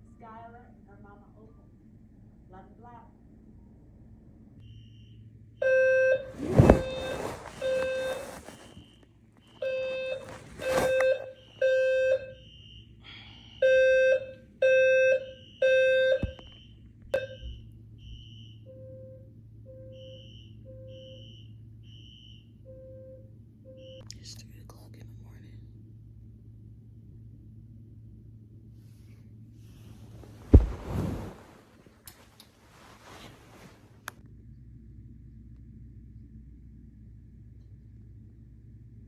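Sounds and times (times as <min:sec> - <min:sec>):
fire alarm low beeps: 0:04.6 - 0:24.0
rustling thumps: 0:06.3 - 0:11.3, 0:29.8 - 0:33.9
higher alarm beep: 0:09.5 - 0:24.0.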